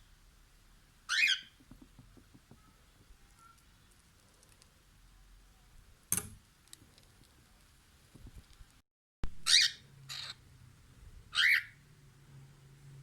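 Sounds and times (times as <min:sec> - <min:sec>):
cockatiel calls: 0:01.1 - 0:01.6, 0:09.4 - 0:10.4, 0:11.3 - 0:11.8.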